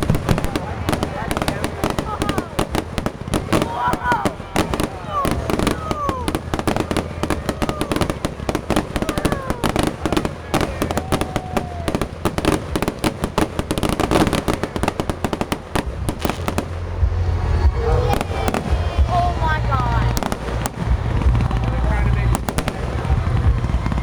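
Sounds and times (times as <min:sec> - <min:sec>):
fireworks bangs and crackling pops: 0:00.0 - 0:24.0
low booming rumble: 0:00.0 - 0:24.0.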